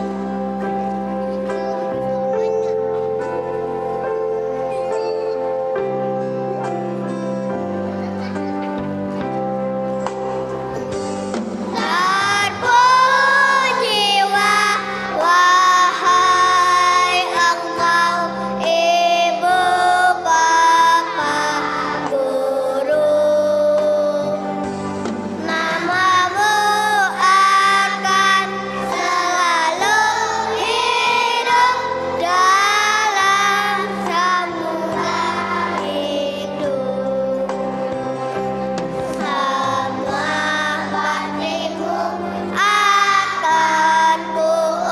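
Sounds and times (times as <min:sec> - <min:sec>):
backing track music: 0:00.0 - 0:44.9
children singing: 0:11.7 - 0:24.4, 0:25.4 - 0:37.8, 0:39.1 - 0:44.9.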